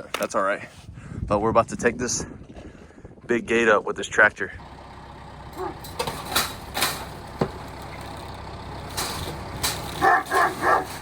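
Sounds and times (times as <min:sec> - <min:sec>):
tractor engine running: 0:04.6 - 0:11.0
dog barking: 0:05.6 - 0:05.8, 0:10.0 - 0:11.0.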